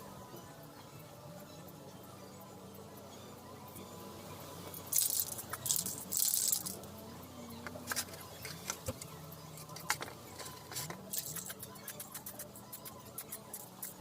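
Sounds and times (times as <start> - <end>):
spray can ball rattling: 4.9 - 6.8, 9.7 - 14.0
scattered clicks: 7.6 - 14.0.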